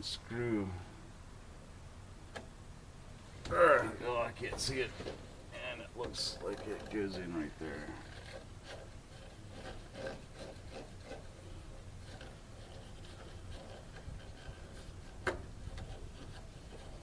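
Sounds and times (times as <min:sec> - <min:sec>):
screwdriver scraping: 0:06.0 - 0:17.0.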